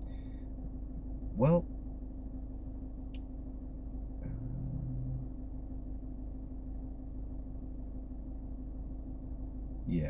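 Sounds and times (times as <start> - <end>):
low rumble and hum: 0.0 - 10.0
brief low tone: 4.2 - 5.4.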